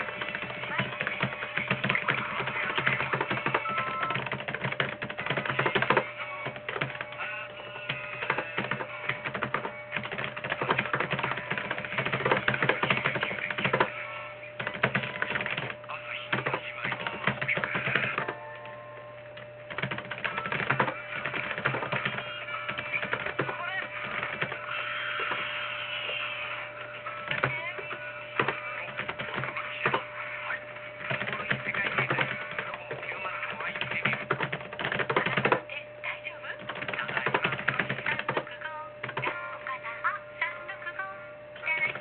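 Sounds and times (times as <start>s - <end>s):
fast typing on keyboard: 0.0s - 13.9s, 14.6s - 18.3s, 19.7s - 26.1s, 27.2s - 30.0s, 31.0s - 35.6s, 36.6s - 39.4s.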